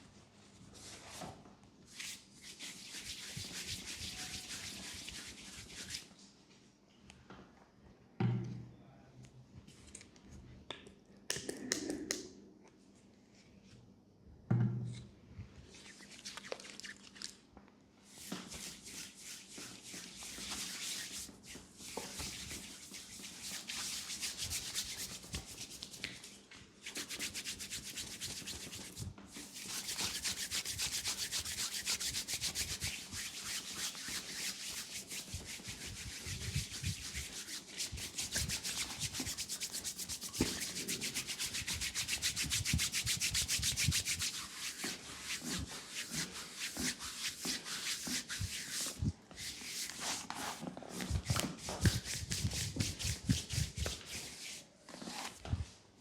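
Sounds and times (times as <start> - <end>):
hands scratching through hair: 2.0 - 6.1, 18.6 - 26.2, 26.8 - 55.4.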